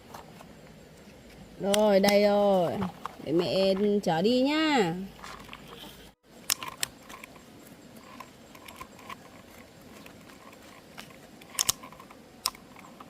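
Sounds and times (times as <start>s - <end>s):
faint background noise: 0.0s - 13.0s
plastic toy truck clicking: 6.5s - 7.4s, 8.0s - 13.0s.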